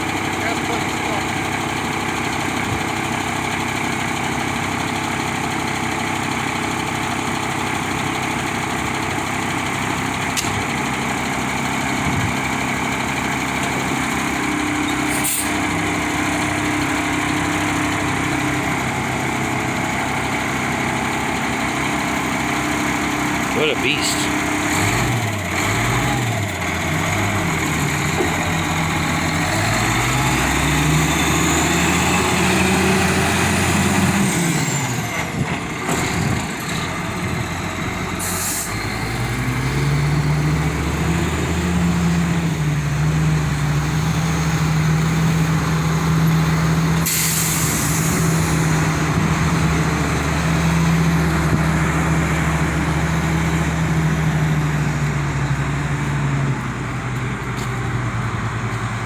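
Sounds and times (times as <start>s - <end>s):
excavator diesel engine running: 0.0s - 59.0s
air hissing: 47.0s - 48.4s.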